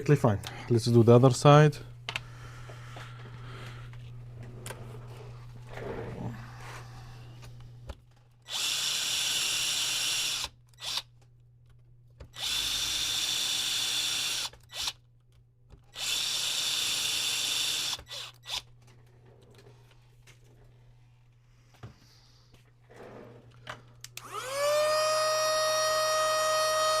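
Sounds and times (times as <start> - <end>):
electric screwdriver whirring: 8.5 - 11.1, 12.3 - 15.0, 15.9 - 18.7, 24.2 - 27.0.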